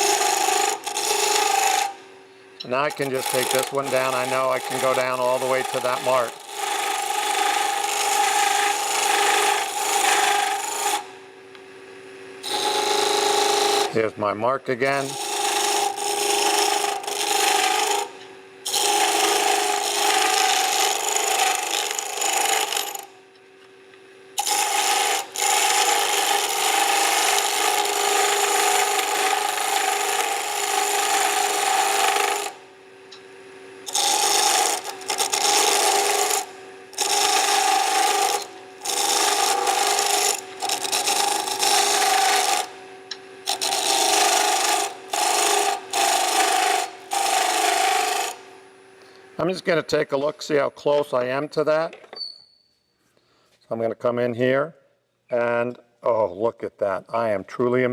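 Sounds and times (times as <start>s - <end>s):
lathe tool scraping wood: 0.0s - 11.1s, 12.4s - 14.1s, 14.7s - 23.1s, 24.4s - 32.6s, 33.8s - 48.5s.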